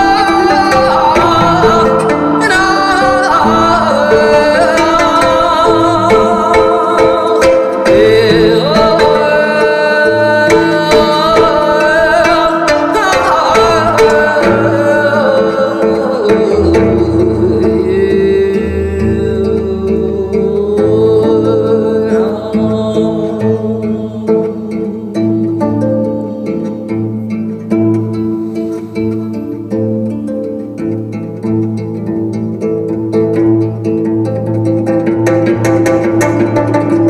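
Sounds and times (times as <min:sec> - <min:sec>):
person singing with wavering pitch: 0:00.0 - 0:27.2
instrumental accompaniment: 0:00.0 - 0:37.0.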